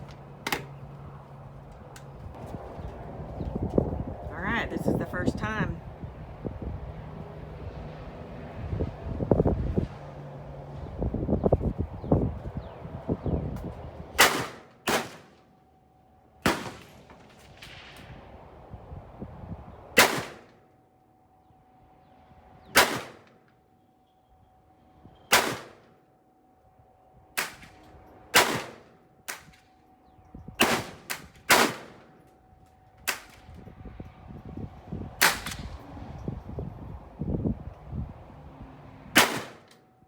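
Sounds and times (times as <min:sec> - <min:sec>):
rifle shots with echo: 0:14.2 - 0:15.4, 0:16.4 - 0:18.0, 0:20.0 - 0:20.6, 0:22.8 - 0:23.4, 0:25.3 - 0:25.9, 0:27.4 - 0:29.5, 0:30.6 - 0:32.2, 0:39.2 - 0:39.7.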